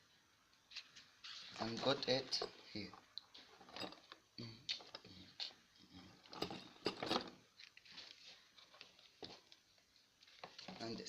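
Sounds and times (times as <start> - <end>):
cardboard and paper rustling: 7.6 - 11.0.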